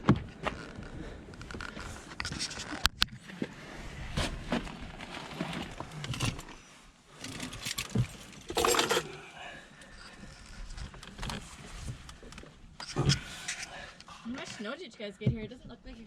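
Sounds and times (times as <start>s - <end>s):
objects clicking and rustling: 7.2s - 9.2s.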